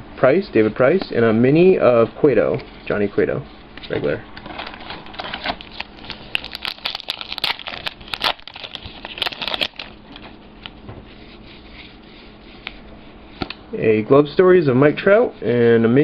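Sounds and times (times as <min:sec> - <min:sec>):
wrapper crinkling and tearing: 0:04.4 - 0:10.8.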